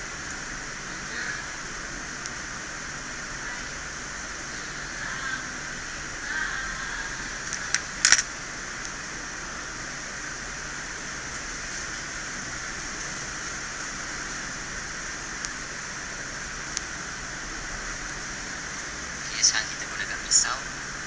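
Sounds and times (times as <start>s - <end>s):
steady fan hiss: 0.0s - 21.0s
sharp clicks: 7.4s - 8.3s.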